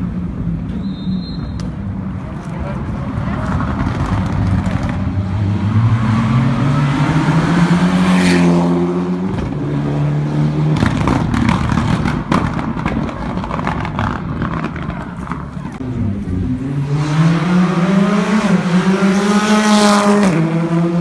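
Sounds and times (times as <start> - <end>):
exhaust pops and crackles: 10.7 - 15.8
rally car accelerating past: 16.0 - 21.0.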